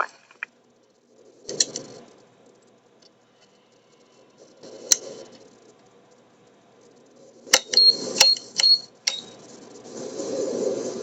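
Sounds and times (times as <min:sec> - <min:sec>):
radio static bursts with clicks: 0:00.0 - 0:00.5.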